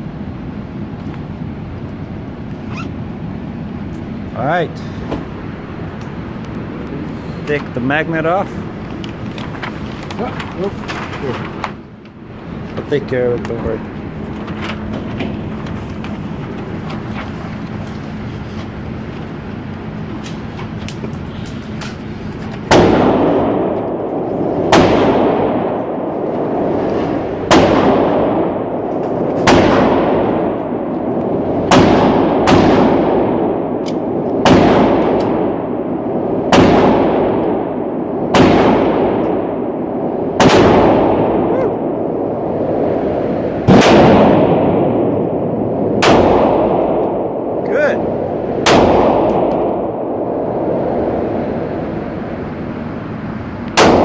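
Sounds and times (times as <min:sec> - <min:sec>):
pistol shots with echo: 0:22.7 - 0:26.2, 0:27.4 - 0:42.0, 0:43.7 - 0:45.3, 0:46.0 - 0:47.6, 0:48.6 - 0:50.2, 0:53.8 - 0:54.0.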